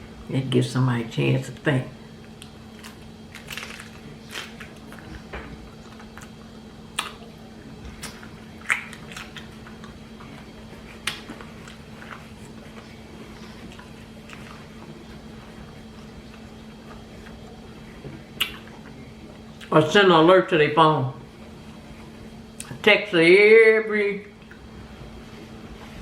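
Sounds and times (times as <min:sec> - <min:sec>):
steady low hum: 0:00.0 - 0:26.0
person chewing: 0:02.3 - 0:19.7.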